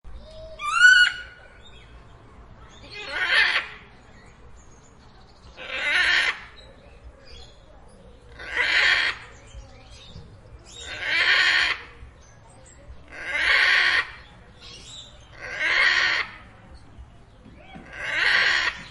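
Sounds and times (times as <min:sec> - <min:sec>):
parrot screeching: 0:00.6 - 0:01.3, 0:03.0 - 0:03.7, 0:05.6 - 0:06.4, 0:08.4 - 0:09.2, 0:10.8 - 0:11.8, 0:13.1 - 0:14.1, 0:15.4 - 0:16.3, 0:17.9 - 0:18.8.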